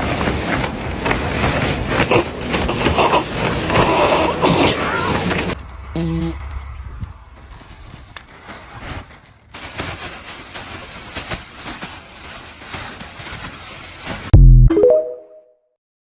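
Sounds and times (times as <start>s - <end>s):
low rumble: 5.6s - 8.7s.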